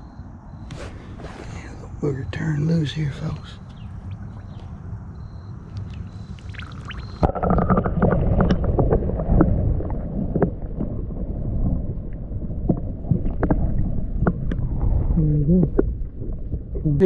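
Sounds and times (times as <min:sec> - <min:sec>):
fish splashing in water: 0:03.8 - 0:10.6.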